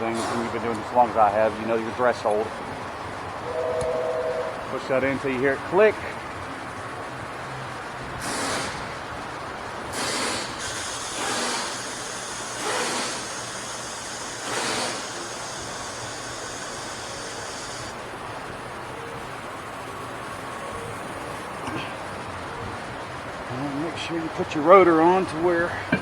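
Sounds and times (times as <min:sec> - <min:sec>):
short hissing bursts: 0:08.2 - 0:09.0, 0:09.9 - 0:18.0.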